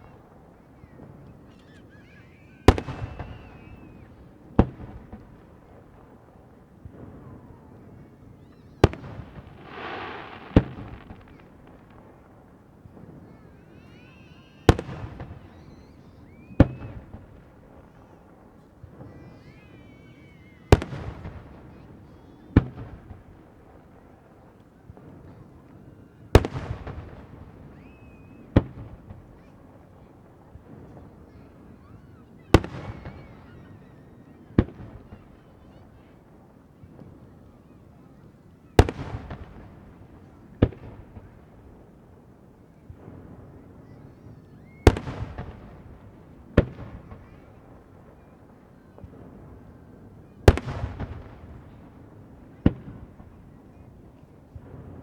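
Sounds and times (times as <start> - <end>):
firework shells booming: 0.4 - 6.1, 8.5 - 23.3
sharp firework crack: 8.8 - 12.3.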